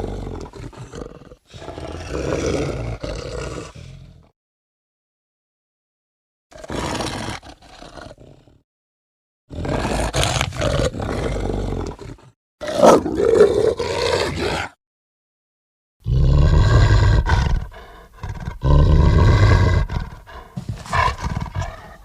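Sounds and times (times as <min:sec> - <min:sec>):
werewolf roars: 0:16.0 - 0:22.0.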